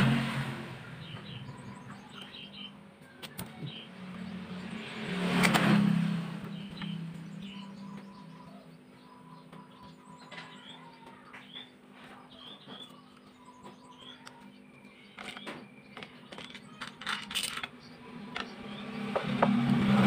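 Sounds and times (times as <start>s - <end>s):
faint bird chirps: 6.6s - 16.8s.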